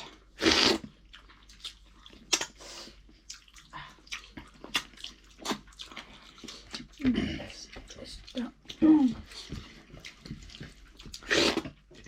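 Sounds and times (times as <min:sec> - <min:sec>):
wet chewing: 0:00.4 - 0:12.0.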